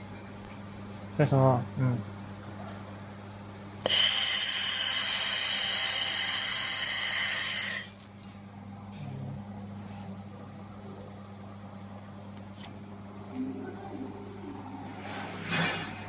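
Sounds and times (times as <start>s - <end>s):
steady low hum: 0.0s - 15.6s
laser welder hissing: 3.8s - 8.0s.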